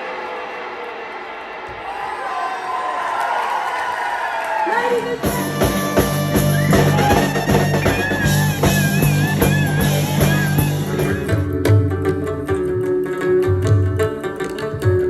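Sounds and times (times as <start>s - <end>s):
band music: 4.7s - 15.0s
guitar: 5.0s - 15.0s
drum kit: 5.2s - 14.1s
wavering high melody: 5.3s - 11.7s
low plucked notes: 5.4s - 15.0s.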